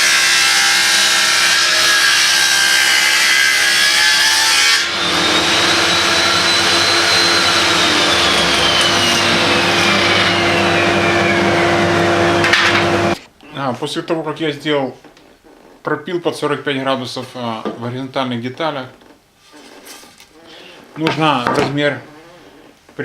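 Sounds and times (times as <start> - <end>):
electric saw cutting boards: 0.0 - 13.2.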